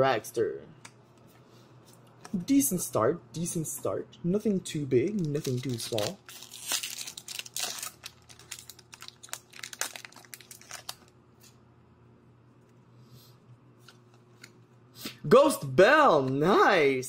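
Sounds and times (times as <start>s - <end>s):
trading cards being handled: 5.0s - 11.6s
foil pack crinkling: 5.1s - 11.2s.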